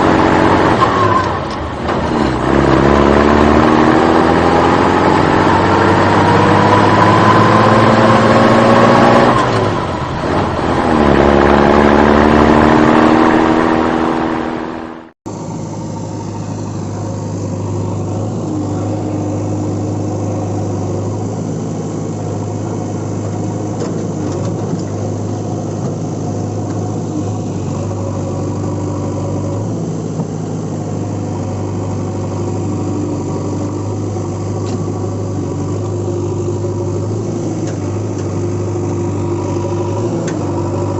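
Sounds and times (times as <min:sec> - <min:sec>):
vehicle engine revving: 0:00.0 - 0:40.9
engine idling: 0:15.3 - 0:40.9.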